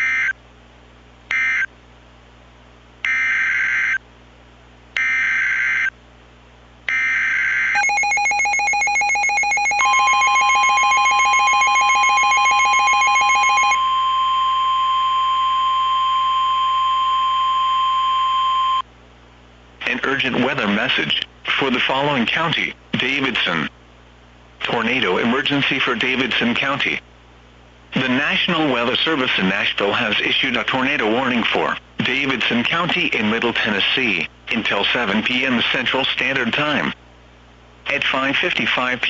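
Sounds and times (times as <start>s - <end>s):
pulsing rattling attention alarm: 6.9s - 14.7s
steady single-pitch warning tone: 6.9s - 18.9s.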